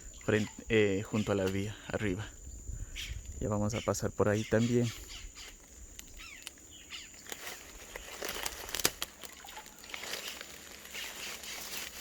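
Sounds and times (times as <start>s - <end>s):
bird chirping: 0.0s - 8.1s
high insect drone: 0.0s - 12.0s
crackles and rustles: 5.3s - 12.0s.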